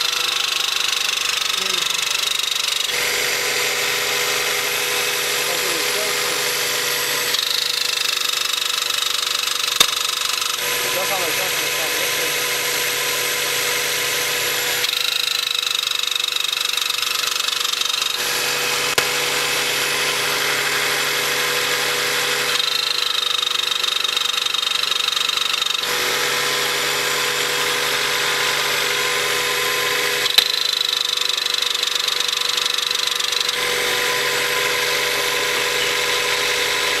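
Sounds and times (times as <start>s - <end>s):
sharp clicks: 7.3s - 10.6s.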